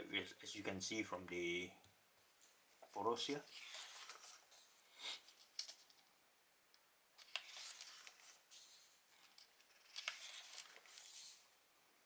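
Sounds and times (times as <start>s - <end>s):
paper pages rustling: 3.4s - 6.1s, 7.2s - 11.6s.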